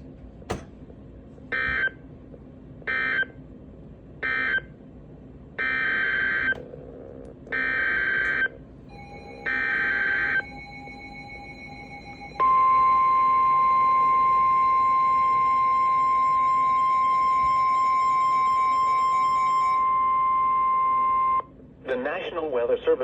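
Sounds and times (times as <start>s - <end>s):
faint steady tone: 8.9s - 21.5s.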